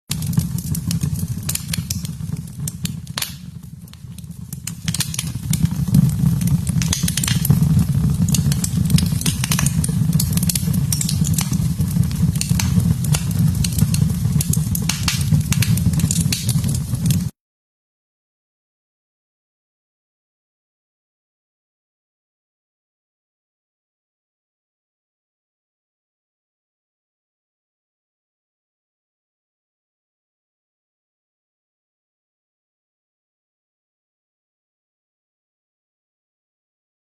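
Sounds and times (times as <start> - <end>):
fire rumbling: 0.1 - 17.3
wood crackling and popping: 0.1 - 17.3.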